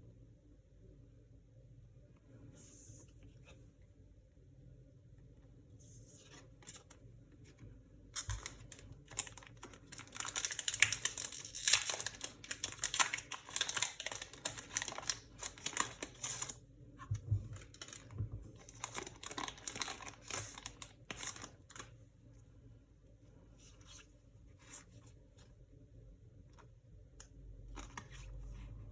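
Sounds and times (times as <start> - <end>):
wrapper crinkling and tearing: 8.2 - 16.6, 17.6 - 21.9.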